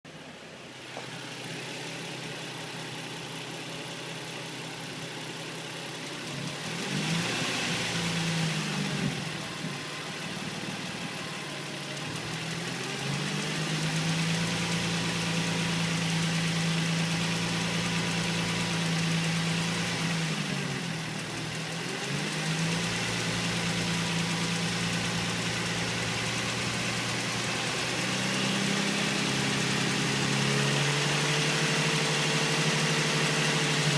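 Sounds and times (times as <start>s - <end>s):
car engine idling: 0.1s - 33.9s
engine ticking: 0.8s - 33.9s.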